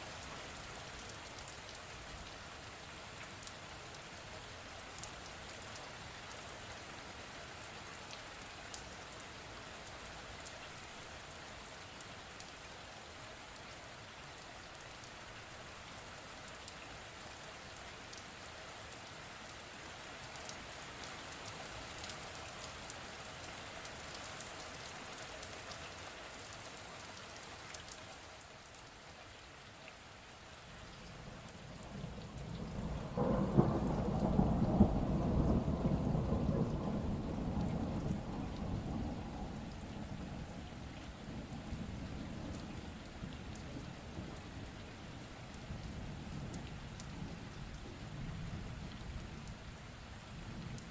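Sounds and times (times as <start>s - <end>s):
steady rain: 0.0s - 50.9s
raindrop ticks: 21.3s - 22.8s, 30.9s - 44.8s, 45.4s - 49.6s
deep thunder rumble: 32.0s - 40.7s.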